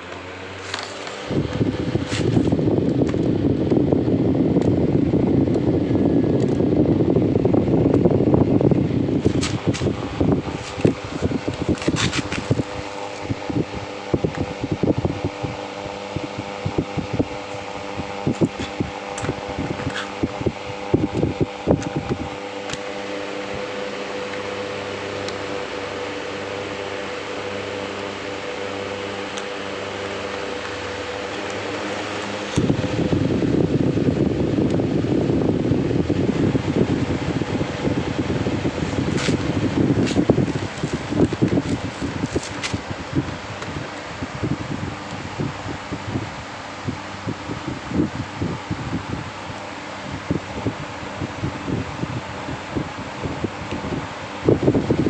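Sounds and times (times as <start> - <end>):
electric fan motor hum: 0.0 - 55.0.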